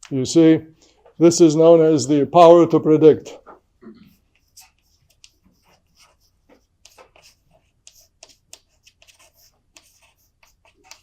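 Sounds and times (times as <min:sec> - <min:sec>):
faint clicks and scratchy taps: 0:04.3 - 0:11.0.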